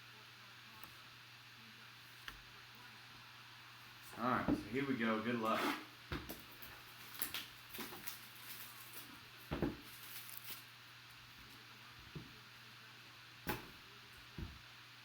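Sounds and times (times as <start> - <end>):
packaging rustling and crinkling: 6.4 - 10.8.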